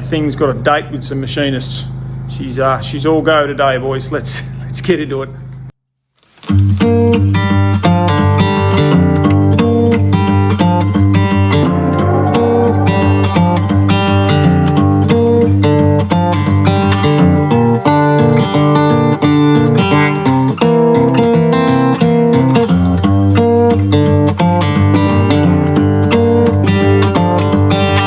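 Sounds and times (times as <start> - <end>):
guitar instrumental music: 9.6 - 16.0.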